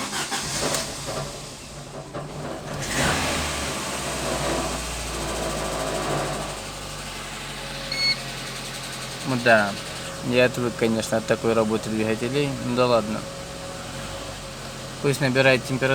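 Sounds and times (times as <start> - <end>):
starter motor cranking: 0.0 - 1.2
car engine revving and idling: 0.0 - 15.9.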